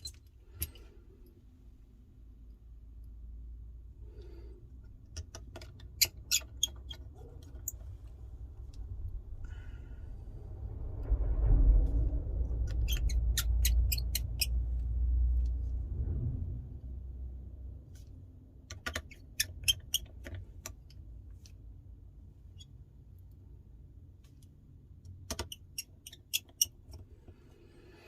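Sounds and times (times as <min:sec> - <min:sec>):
low handling rumble: 0:07.1 - 0:18.6.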